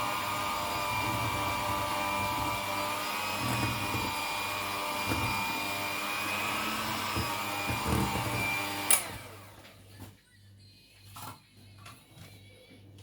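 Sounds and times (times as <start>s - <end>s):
electric mixer running: 0.0s - 9.5s.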